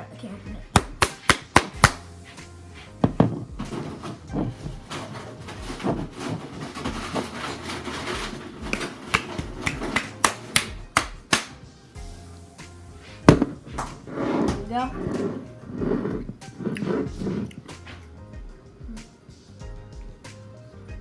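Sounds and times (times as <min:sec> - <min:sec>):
background music: 0:00.0 - 0:21.0.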